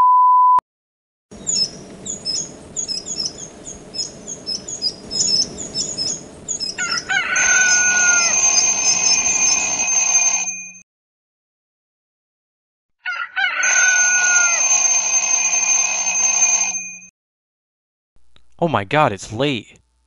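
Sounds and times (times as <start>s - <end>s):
small birds chirping: 1.3s - 7.0s
rooster crowing: 6.7s - 8.6s, 13.0s - 14.7s.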